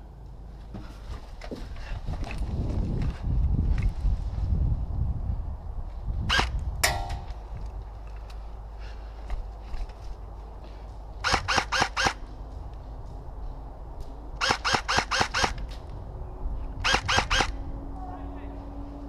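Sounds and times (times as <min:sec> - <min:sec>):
airsoft rifle rapid shots: 0:11.2 - 0:12.2, 0:14.4 - 0:15.6, 0:16.8 - 0:17.5.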